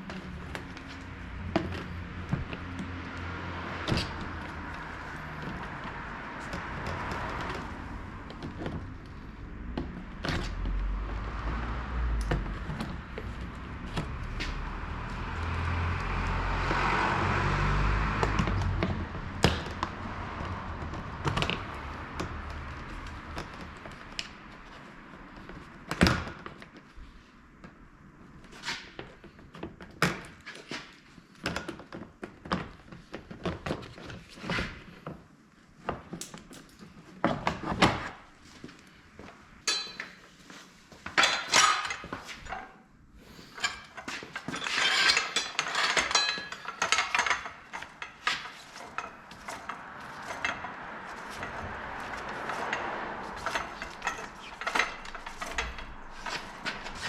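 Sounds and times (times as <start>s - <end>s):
knocks and clinks of tools: 39.6s - 40.4s, 41.0s - 42.8s, 43.5s - 57.0s.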